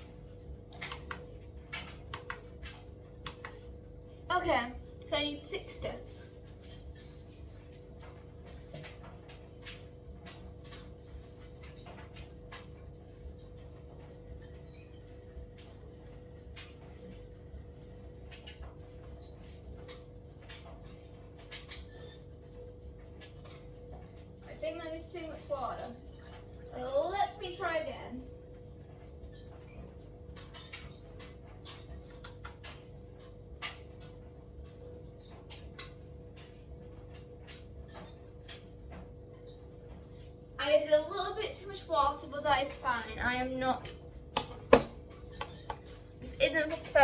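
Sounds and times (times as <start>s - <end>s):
steady electrical hum: 0.0s - 47.0s
utensils clicking and tapping: 0.7s - 3.6s, 43.8s - 46.0s
kitchen containers clicking and knocking: 44.4s - 45.9s.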